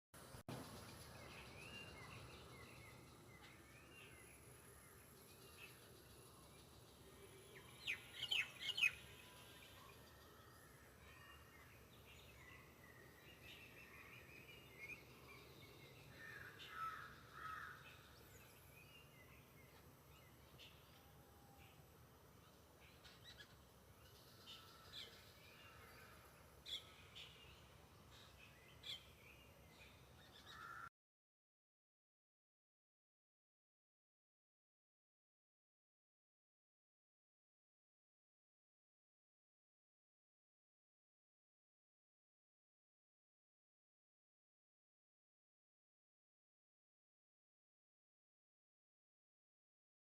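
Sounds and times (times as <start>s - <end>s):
small birds chirping: 0.5s - 21.0s.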